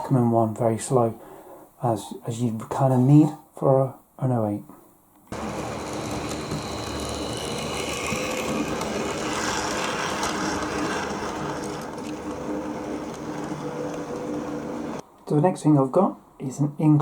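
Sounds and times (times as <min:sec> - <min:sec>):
model train motor whine: 0:05.3 - 0:15.0
wheels on rails: 0:05.3 - 0:15.0.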